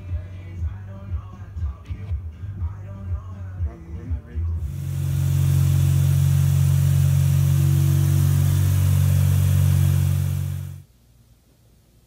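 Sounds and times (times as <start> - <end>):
car engine running: 4.6 - 10.8.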